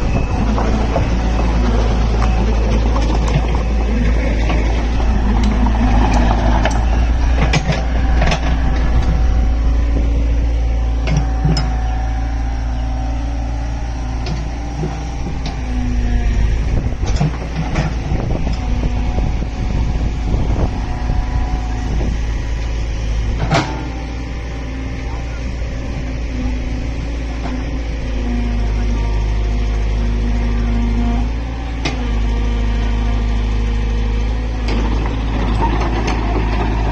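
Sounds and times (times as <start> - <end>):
excavator diesel engine rumbling: 0.0 - 36.9
machine clanks and knocks: 23.4 - 24.0.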